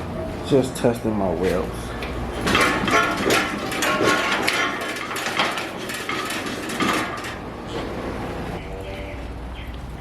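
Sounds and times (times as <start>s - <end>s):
metallic clanks and ringing: 2.4s - 7.4s.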